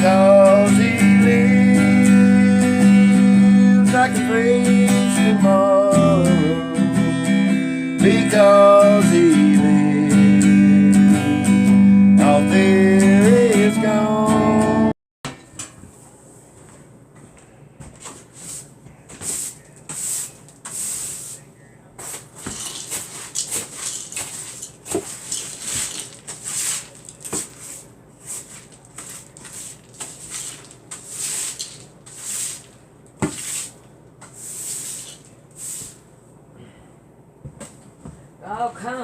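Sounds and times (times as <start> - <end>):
objects knocking: 22.4 - 27.7.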